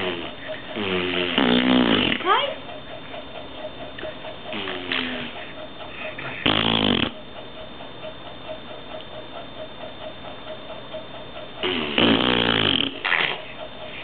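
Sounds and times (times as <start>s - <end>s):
person making raspy snore-like noises: 0.0s - 2.3s, 4.5s - 5.4s, 6.1s - 7.2s, 11.6s - 13.6s.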